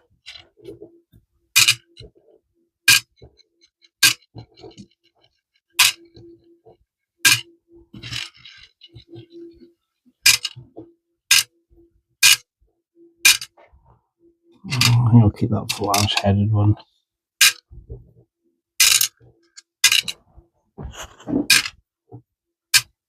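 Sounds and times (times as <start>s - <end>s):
rummaging through screws: 19.8s - 20.2s.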